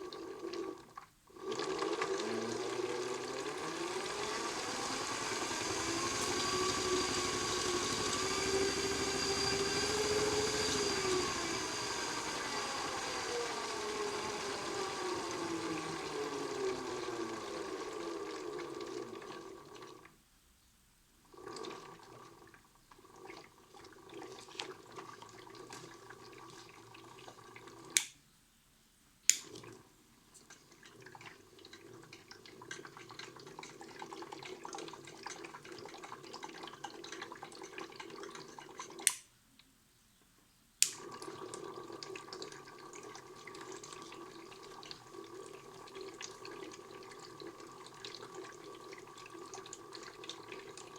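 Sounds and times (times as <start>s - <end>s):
toy washing machine motor whining: 0.0s - 20.0s
sharp clicks: 29.3s - 29.6s, 40.8s - 41.0s.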